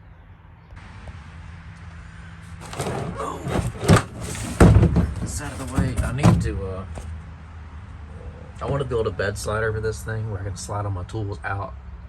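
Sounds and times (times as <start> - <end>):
loud thump: 2.6 - 7.1
tools rustling and knocking: 2.6 - 7.2.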